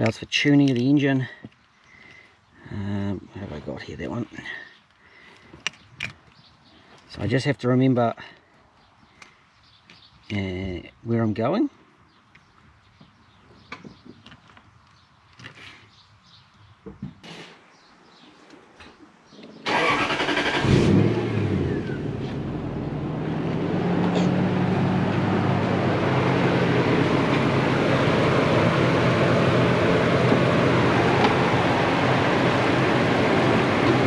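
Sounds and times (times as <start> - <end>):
engine starter cranking: 19.6 - 21.2
engine revving then idling: 19.7 - 34.0.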